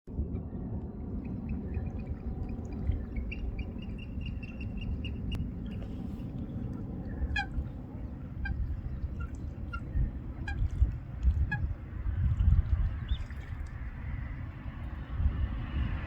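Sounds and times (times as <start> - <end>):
low rumble: 0.1 - 16.0
birds calling: 1.2 - 11.8.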